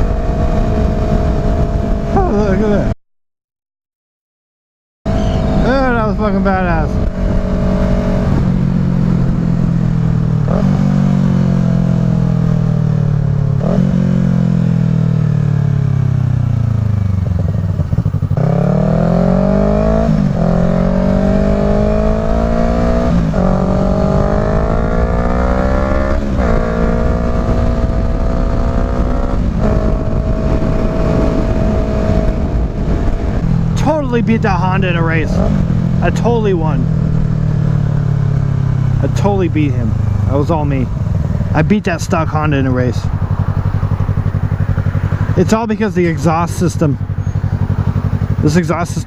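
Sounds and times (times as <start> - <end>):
motorcycle engine revving and upshifting: 0.0 - 2.9, 5.1 - 49.0
wind rush on microphone: 0.0 - 2.9, 5.1 - 12.6, 16.7 - 39.0.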